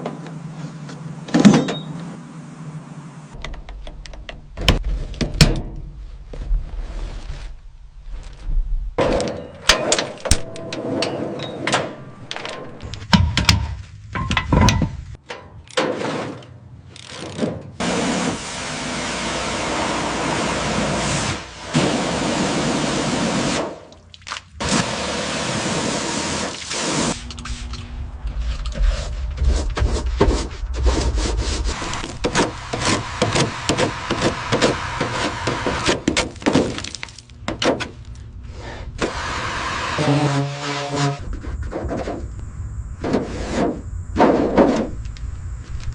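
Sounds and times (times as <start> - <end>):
steady tool hissing: 31.6 - 35.8.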